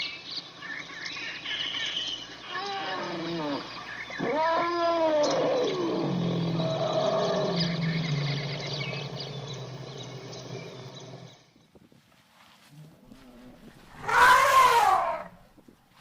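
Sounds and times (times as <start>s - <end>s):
birds chirping: 0.0s - 11.8s
baby elephant calling: 2.4s - 8.7s, 13.7s - 15.4s.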